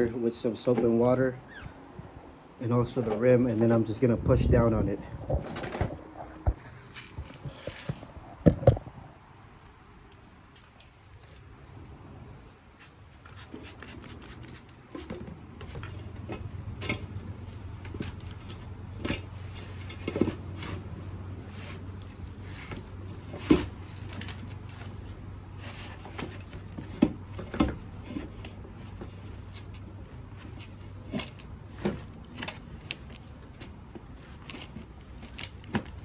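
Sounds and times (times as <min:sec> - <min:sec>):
tire knocks and squeaks: 0:00.7 - 0:03.4, 0:13.7 - 0:36.0.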